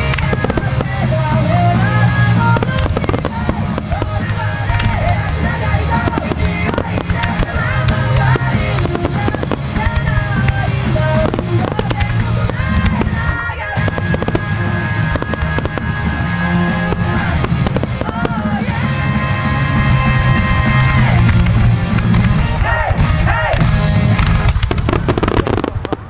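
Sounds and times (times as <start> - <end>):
fireworks bursting and crackling: 0.0 - 26.0
loud music: 0.0 - 26.0.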